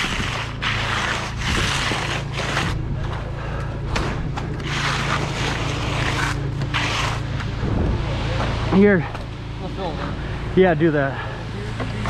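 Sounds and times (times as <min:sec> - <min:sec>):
rough scraping noise: 0:00.0 - 0:03.2, 0:04.6 - 0:07.5.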